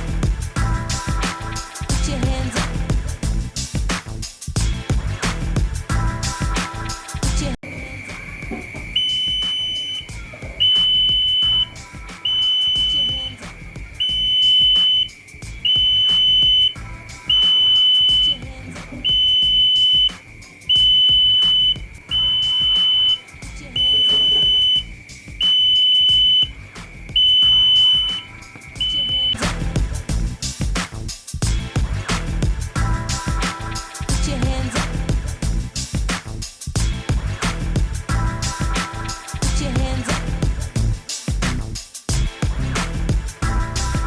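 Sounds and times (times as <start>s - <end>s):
steady high tone: 7.6s - 29.6s
smoke alarm high-pitched beeps: 7.9s - 29.6s.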